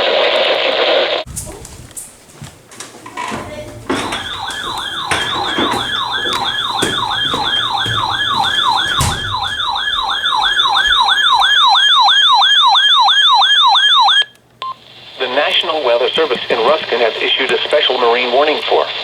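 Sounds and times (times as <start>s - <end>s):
warbling electronic siren alarm: 3.9s - 14.3s
faint radio static: 14.8s - 19.0s.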